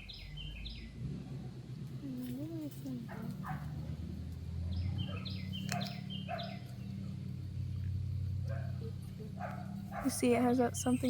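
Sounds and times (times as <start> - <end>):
steady low hum: 0.0 - 11.0
high bird chirps: 4.7 - 7.0.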